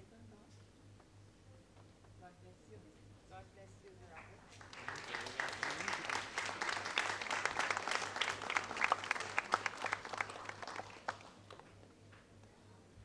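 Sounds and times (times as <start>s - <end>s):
audience clapping: 4.1s - 12.0s.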